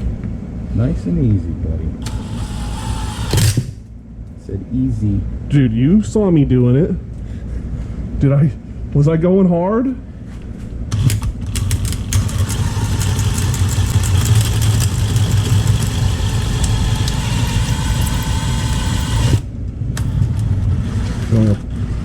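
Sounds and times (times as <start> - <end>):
motor running: 2.0 - 3.9, 10.9 - 22.0.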